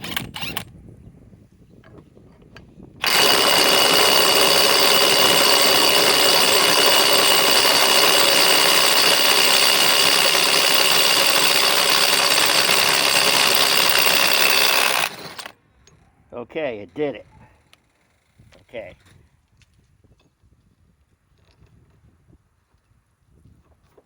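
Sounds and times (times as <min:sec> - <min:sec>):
impact wrench hammering: 0:03.0 - 0:15.5.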